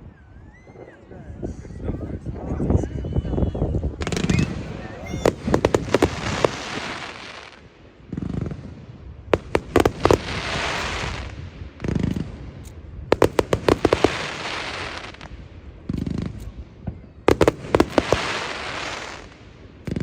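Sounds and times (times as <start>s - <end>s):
firework booms: 3.5s - 20.0s
firework cracks and crackling: 3.9s - 20.0s.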